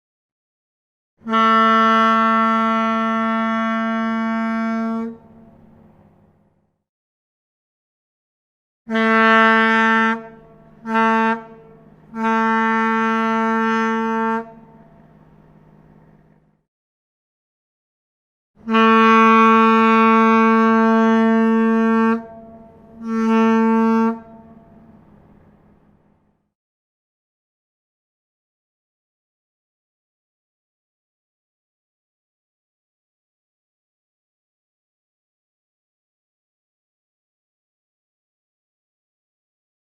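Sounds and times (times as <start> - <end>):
ship horn blast: 1.2 - 6.4, 8.9 - 16.0, 18.6 - 26.4.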